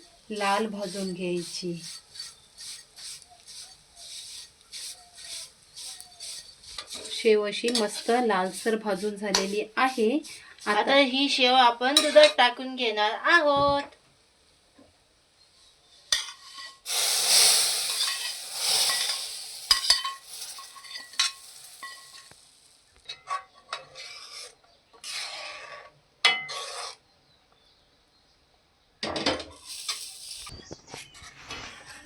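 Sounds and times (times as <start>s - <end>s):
hissing in a pan: 0.0s - 10.9s, 16.8s - 23.0s, 29.5s - 30.6s
spoon scraping a pot: 0.3s - 10.9s, 17.7s - 22.4s, 23.2s - 27.0s
metal spoon clinking on pot: 12.0s - 12.4s, 17.9s - 22.3s.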